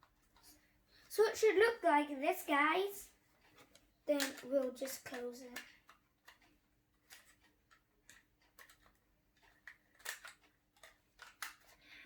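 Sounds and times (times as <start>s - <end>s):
plastic clicks and taps: 3.5s - 11.8s.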